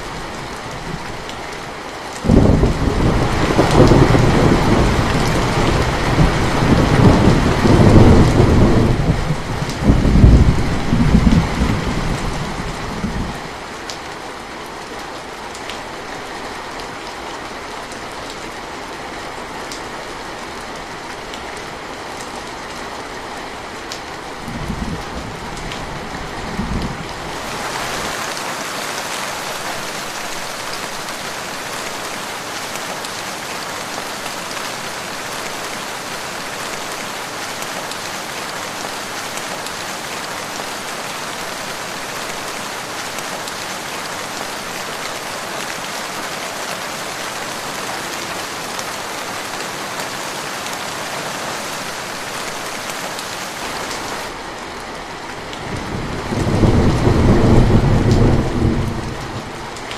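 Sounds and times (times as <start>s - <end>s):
steady rain: 0.0s - 59.9s
thunder rumbling: 2.3s - 13.4s, 55.7s - 59.5s.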